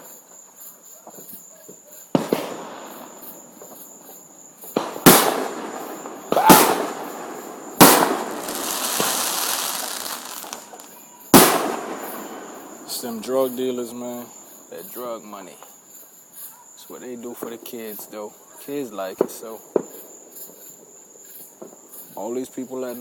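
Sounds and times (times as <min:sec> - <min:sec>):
crackling hiss of fireworks: 0:00.0 - 0:23.0
crickets chirping: 0:00.0 - 0:23.0
fireworks bangs: 0:01.1 - 0:13.6.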